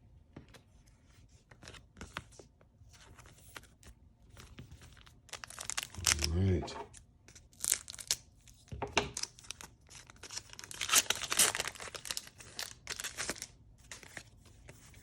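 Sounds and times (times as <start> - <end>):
foil wrapper tearing and crinkling: 5.0 - 6.5, 7.4 - 8.3, 9.1 - 14.2.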